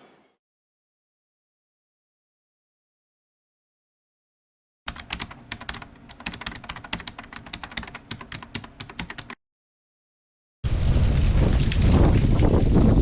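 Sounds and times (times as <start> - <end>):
keyboard typing: 4.9 - 9.4.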